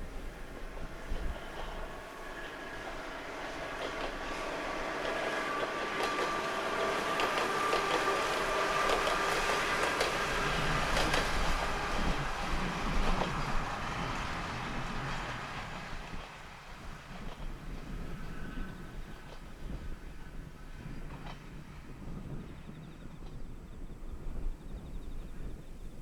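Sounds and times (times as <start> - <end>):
diesel train whine: 0.0 - 26.0
wheels clicking over rails: 0.1 - 16.4.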